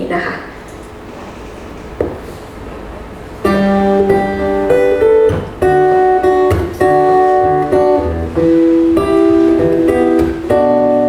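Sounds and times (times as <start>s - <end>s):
acoustic guitar strumming: 3.4s - 11.0s.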